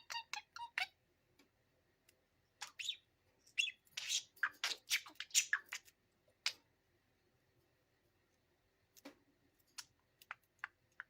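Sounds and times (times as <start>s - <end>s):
parakeet chirping: 0.0s - 1.0s, 2.5s - 6.6s, 9.8s - 11.0s.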